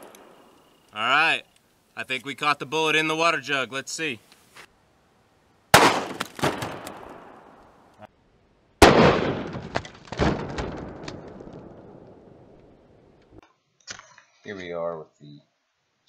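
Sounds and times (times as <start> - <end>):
pistol shots with echo: 5.8 - 7.6, 8.8 - 9.6.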